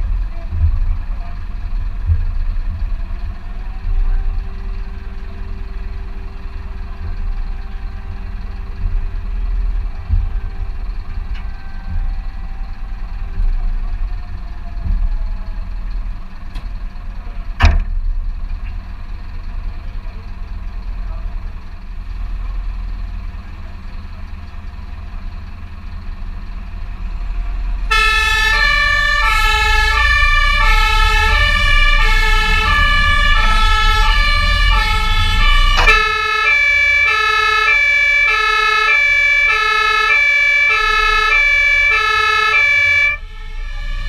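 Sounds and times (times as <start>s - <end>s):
fire engine rumbling: 0.0s - 44.0s
distant siren: 3.2s - 16.5s, 26.9s - 44.0s.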